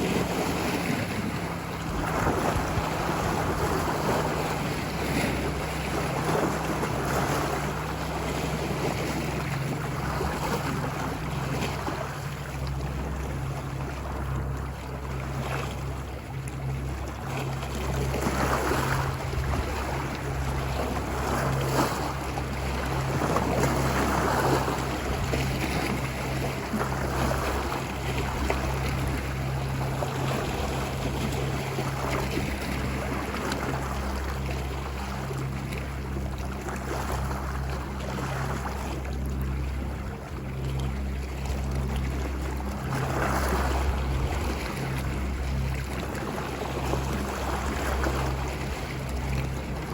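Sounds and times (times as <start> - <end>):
low surf rumble: 0.0 - 49.9
ocean waves breaking: 0.0 - 49.9.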